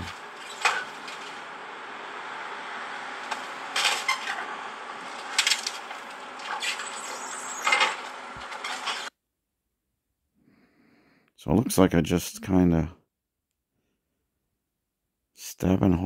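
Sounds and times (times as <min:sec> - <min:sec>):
clattering bursts: 0:00.0 - 0:02.0, 0:03.1 - 0:09.1
mechanical running noise: 0:00.0 - 0:09.1.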